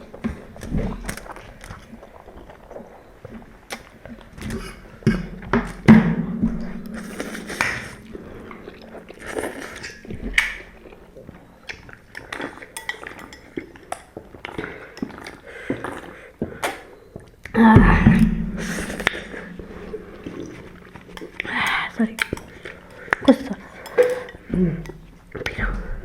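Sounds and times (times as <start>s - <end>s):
chewing noodles: 6.9s - 17.6s
utensils clinking against bowl: 7.0s - 16.0s, 18.6s - 25.5s.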